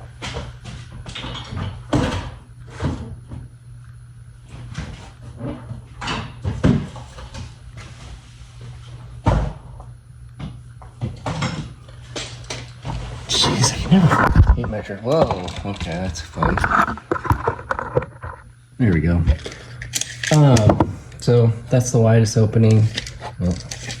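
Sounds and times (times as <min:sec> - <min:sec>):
objects knocking and scraping: 0:11.3 - 0:18.5, 0:19.2 - 0:21.1, 0:22.6 - 0:24.0.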